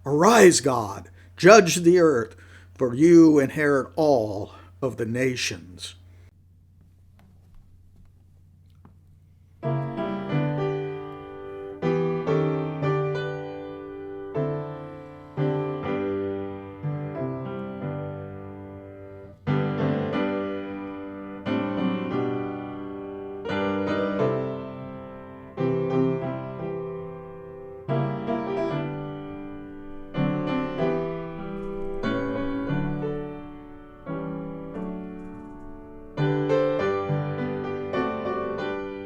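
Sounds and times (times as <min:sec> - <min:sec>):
piano playing slow hymn: 0:09.6 - 0:39.0.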